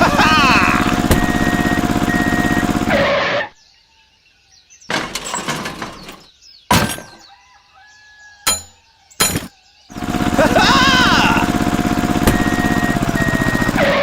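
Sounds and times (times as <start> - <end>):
rattling crash: 0.0 - 3.1, 4.9 - 7.3, 8.5 - 9.5, 10.6 - 13.8
small tractor engine running: 0.0 - 3.4, 9.9 - 14.0.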